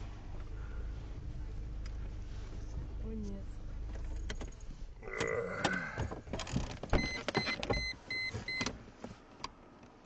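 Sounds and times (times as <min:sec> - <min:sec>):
clicks and knocks in car: 0:05.6 - 0:09.9
car warning chime beeping: 0:07.0 - 0:08.7.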